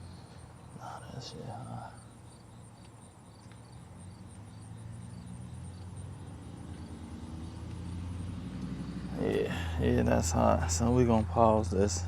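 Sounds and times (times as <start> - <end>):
crickets chirping: 0.0 - 12.0
low engine hum: 0.0 - 12.0.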